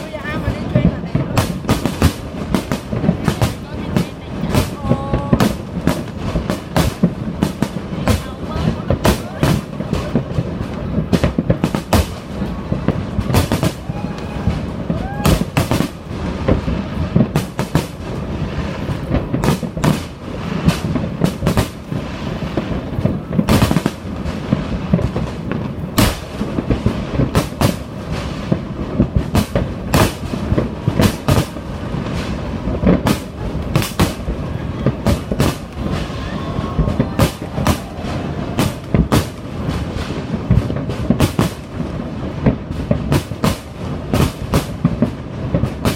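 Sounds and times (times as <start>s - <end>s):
crowd voices: 0.0s - 45.9s
fireworks bangs: 0.0s - 45.9s
low rumble: 27.9s - 42.9s.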